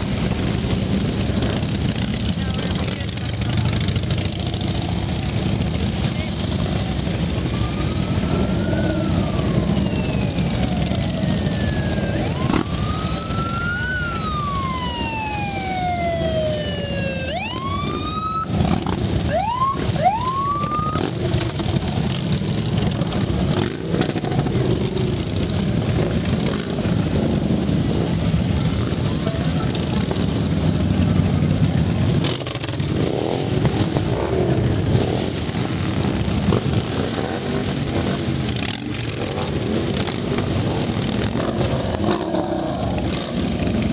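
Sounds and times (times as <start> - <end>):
engines rumbling: 0.0 - 43.9
emergency siren wailing: 6.3 - 21.8
siren whoops: 7.3 - 21.2.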